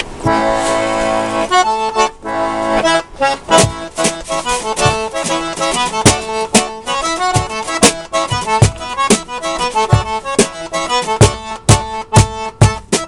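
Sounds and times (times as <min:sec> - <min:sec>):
accordion and fiddle dance tune: 0:00.0 - 0:13.0
kick drum thumping: 0:03.5 - 0:13.0.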